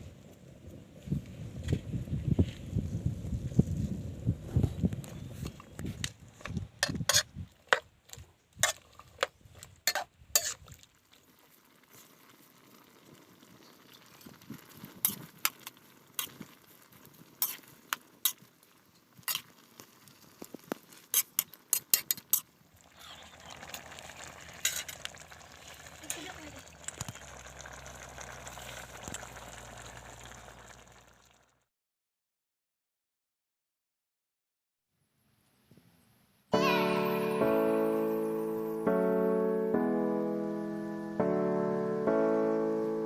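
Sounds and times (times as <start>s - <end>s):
cooking hiss: 9.8s - 31.4s
utensil clinking against pot: 9.9s - 10.6s.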